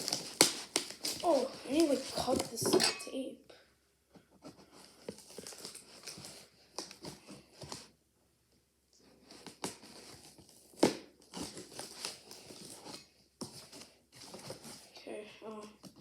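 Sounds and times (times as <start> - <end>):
packing tape cut and torn: 0.0 - 2.4
crinkling and scraping: 0.0 - 3.3, 4.1 - 8.0, 9.0 - 16.0.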